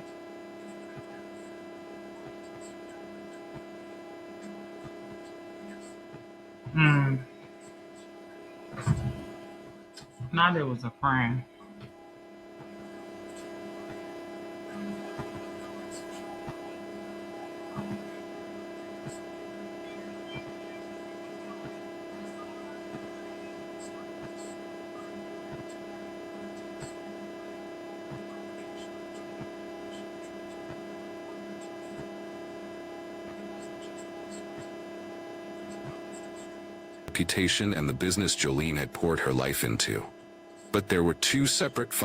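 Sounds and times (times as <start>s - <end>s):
steady hum: 0.0s - 42.0s.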